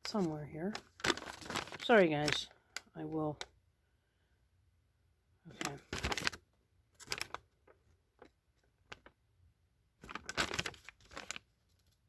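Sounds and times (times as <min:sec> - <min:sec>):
paper pages rustling: 0:00.0 - 0:02.4, 0:05.6 - 0:06.4, 0:07.0 - 0:07.4, 0:10.0 - 0:12.0.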